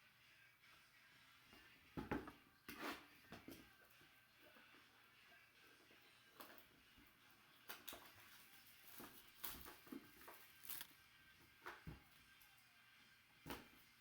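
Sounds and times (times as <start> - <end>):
packaging and cards rustling: 8.8 - 10.9.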